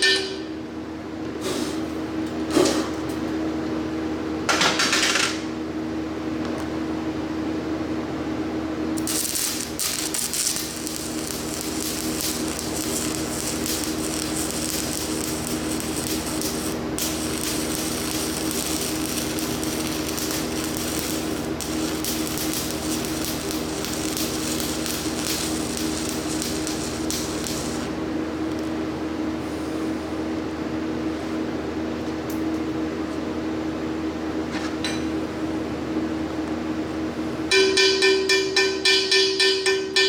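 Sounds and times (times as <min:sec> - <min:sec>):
steady hum: 0:06.9 - 0:30.5
welding arc crackling sizzle: 0:08.9 - 0:28.7.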